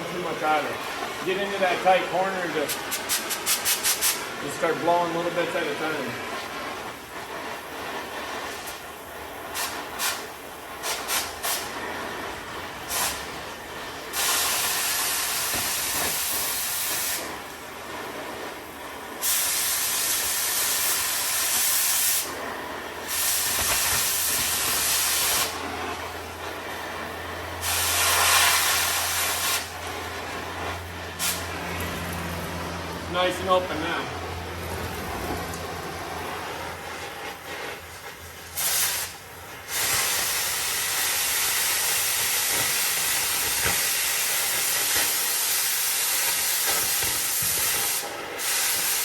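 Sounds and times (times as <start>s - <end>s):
cutting torch hissing blasts: 0.0s - 49.0s
cutting torch pops: 2.6s - 4.3s, 9.5s - 12.2s, 12.8s - 18.0s, 19.2s - 26.1s, 27.6s - 29.8s, 31.2s - 31.5s, 36.9s - 49.0s.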